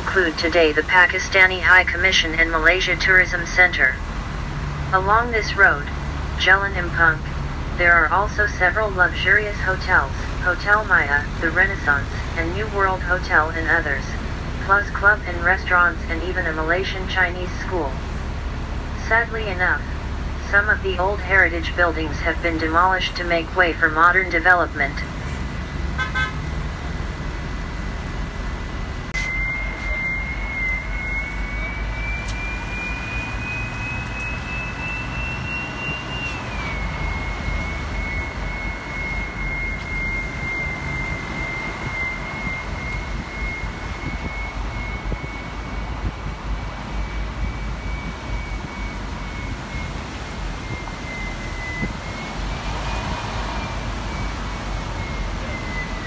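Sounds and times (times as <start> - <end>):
bus engine and road rumble: 0.0 - 56.0
thin high whine: 29.0 - 56.0.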